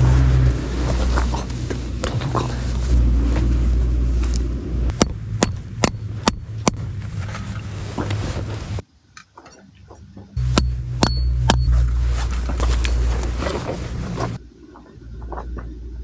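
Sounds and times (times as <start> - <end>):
regular ticking: 4.9 - 6.8, 10.4 - 11.7
car engine drone inside cabin: 10.4 - 16.0.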